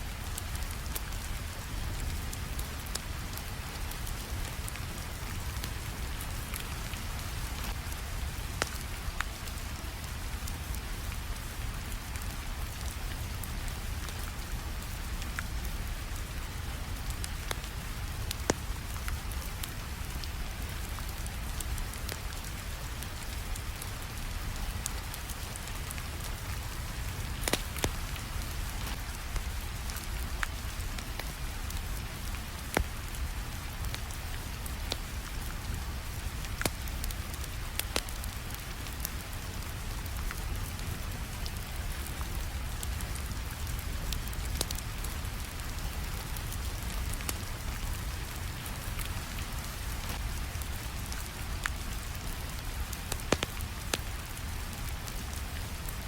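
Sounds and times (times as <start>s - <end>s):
rainfall hiss: 0.0s - 56.0s
wood fire popping: 26.0s - 31.2s, 36.5s - 38.6s, 44.1s - 44.8s, 48.8s - 54.4s.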